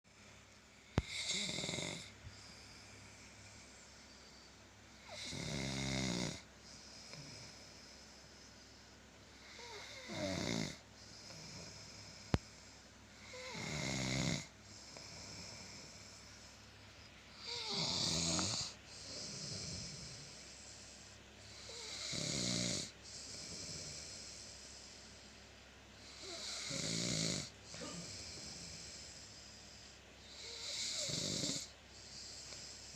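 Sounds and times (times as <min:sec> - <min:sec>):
person snoring: 0:00.9 - 0:03.9, 0:05.0 - 0:08.0, 0:09.4 - 0:16.2, 0:17.3 - 0:20.9, 0:21.5 - 0:24.6, 0:26.0 - 0:32.9
soft breathing: 0:02.0 - 0:05.1, 0:06.4 - 0:10.0, 0:10.8 - 0:13.6, 0:14.4 - 0:21.9, 0:22.8 - 0:26.5, 0:27.5 - 0:32.9.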